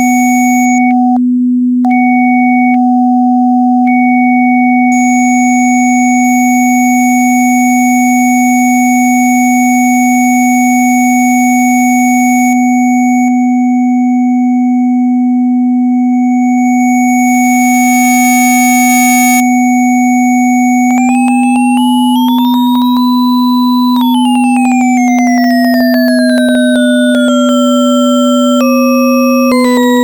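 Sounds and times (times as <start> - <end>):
stack of steady pure tones: 5.0 - 30.0.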